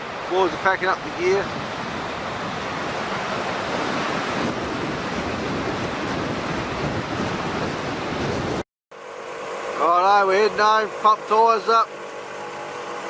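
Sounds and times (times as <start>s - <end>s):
strong wind howling: 0.0s - 8.6s
surf: 0.0s - 8.6s.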